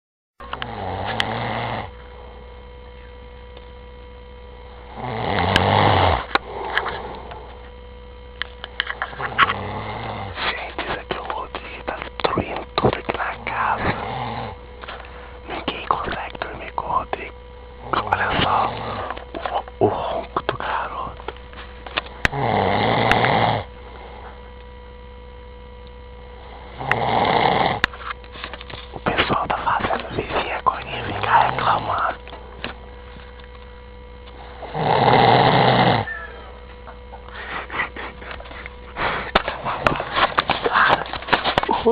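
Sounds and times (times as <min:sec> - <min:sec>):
steady electrical hum: 0:00.4 - 0:41.9
man snoring: 0:00.6 - 0:01.9, 0:04.9 - 0:07.5, 0:09.1 - 0:12.5, 0:13.2 - 0:14.6, 0:15.5 - 0:21.2, 0:22.3 - 0:24.2, 0:26.4 - 0:27.8, 0:29.0 - 0:32.2, 0:34.4 - 0:36.1.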